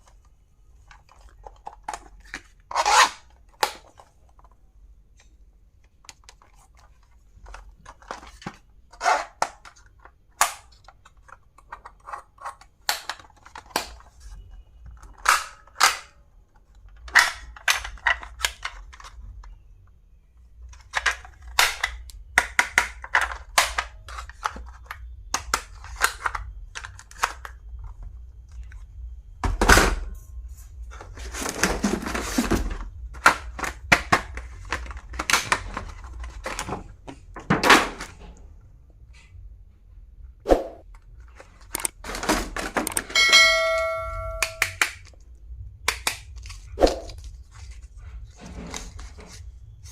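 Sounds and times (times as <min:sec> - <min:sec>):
packaging rustling: 0:30.9 - 0:37.4
hard plastic clicks and snaps: 0:41.6 - 0:42.0, 0:45.8 - 0:46.6.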